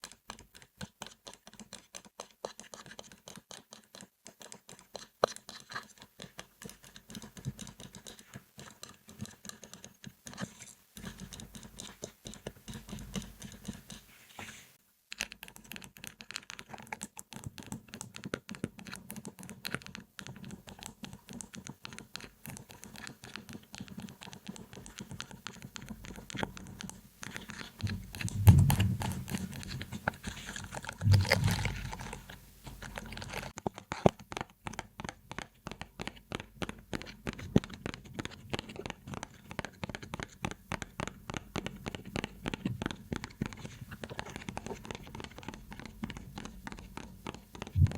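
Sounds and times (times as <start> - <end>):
handling noise: 27.8 - 30.2, 31.0 - 33.4.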